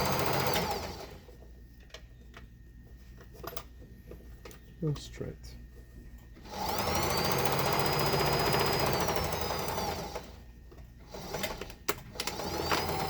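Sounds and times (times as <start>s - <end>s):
sewing machine motor whine: 0.0s - 1.3s, 6.4s - 10.4s, 11.0s - 13.0s.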